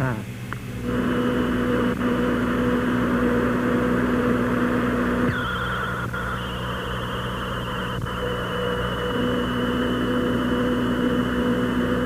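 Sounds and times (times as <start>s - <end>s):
steady hissing drone: 0.7s - 12.0s
held electronic tones: 4.9s - 12.0s.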